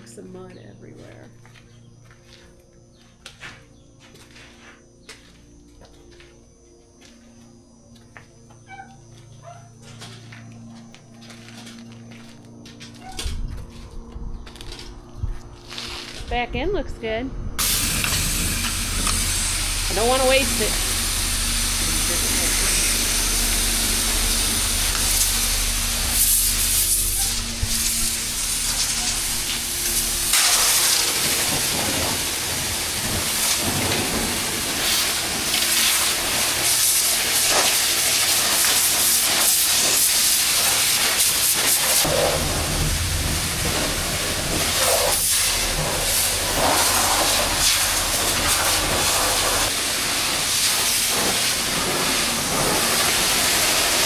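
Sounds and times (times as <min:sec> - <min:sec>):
low steady hum: 0:13.3 - 0:37.2
water spraying from hose: 0:17.6 - 0:54.0.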